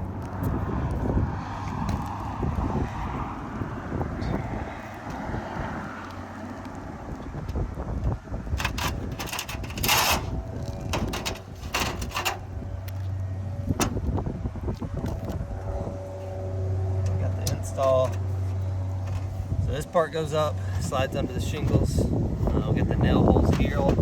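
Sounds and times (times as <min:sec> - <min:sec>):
wind buffeting microphone: 0:00.0 - 0:24.0
scraping rustling noises: 0:08.6 - 0:13.2, 0:17.1 - 0:19.9.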